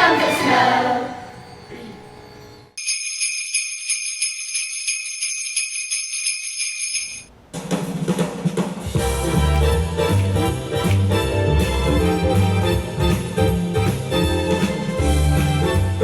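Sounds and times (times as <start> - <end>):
sleigh bells shaken: 2.8 - 7.3
music with strong bass line: 9.0 - 16.0.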